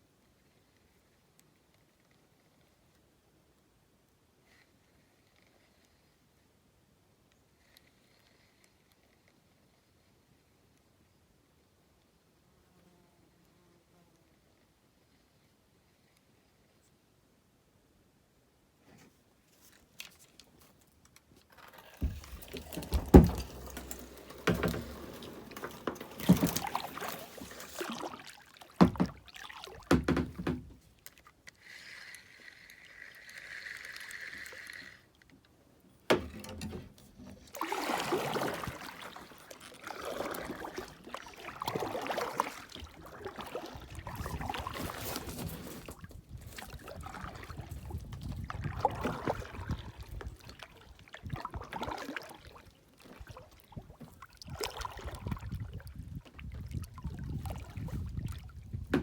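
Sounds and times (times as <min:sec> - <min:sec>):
paddle splashing in water: 0:21.5 - 0:32.0, 0:36.1 - 0:59.0.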